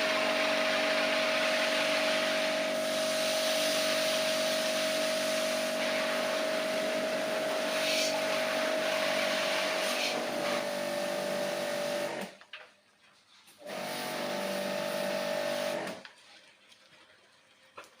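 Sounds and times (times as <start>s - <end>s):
water jet hissing: 0.0s - 12.2s
pressure washer motor humming: 0.0s - 12.4s, 13.6s - 16.0s.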